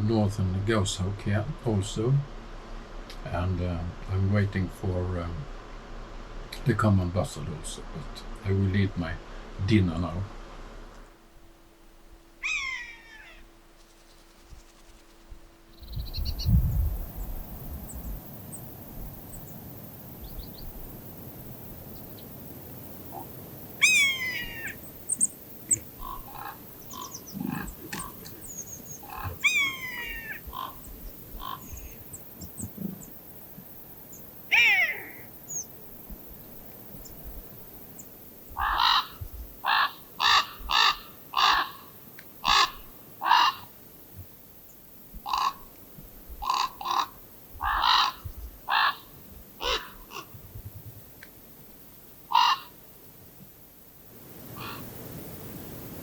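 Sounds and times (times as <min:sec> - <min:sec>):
falling bird calls: 0:10.8 - 0:51.2, 0:52.2 - 0:52.8, 0:54.4 - 0:55.0
crow cawing: 0:12.4 - 0:13.5, 0:23.8 - 0:24.8, 0:25.9 - 0:32.0, 0:34.5 - 0:35.3, 0:38.6 - 0:43.8, 0:45.2 - 0:45.8, 0:46.4 - 0:50.3, 0:52.3 - 0:52.8, 0:54.6 - 0:54.8.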